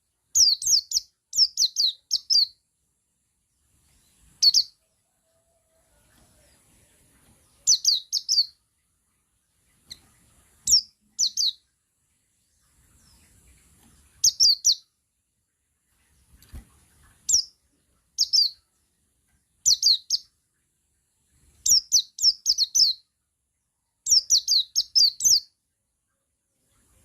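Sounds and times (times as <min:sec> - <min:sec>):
bird singing high chirps: 0:00.3 - 0:02.6, 0:03.9 - 0:04.8, 0:06.2 - 0:08.6, 0:09.8 - 0:11.7, 0:12.6 - 0:14.9, 0:17.3 - 0:17.6, 0:18.2 - 0:18.7, 0:19.6 - 0:20.3, 0:21.6 - 0:23.1, 0:24.0 - 0:25.6.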